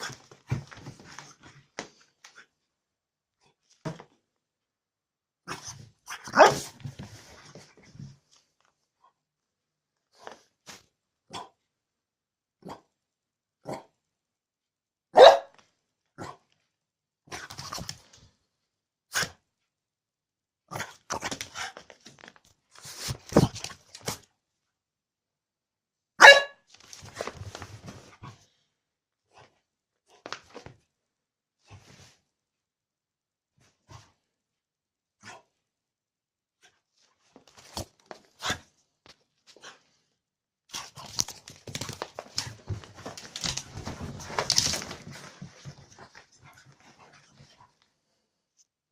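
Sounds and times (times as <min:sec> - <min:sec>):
dog barking: 0:06.3 - 0:06.7, 0:15.1 - 0:15.5, 0:26.2 - 0:26.6
dog scuffling and scraping: 0:40.7 - 0:47.6.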